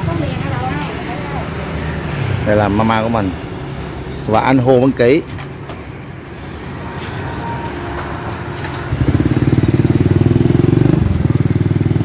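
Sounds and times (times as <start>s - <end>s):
engine running: 5.8s - 12.0s.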